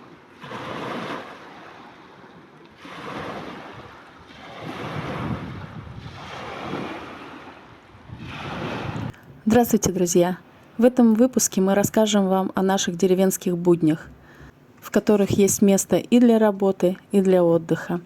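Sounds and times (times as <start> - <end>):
small waves washing ashore: 0.0 - 10.8
wind on microphone: 2.8 - 9.9.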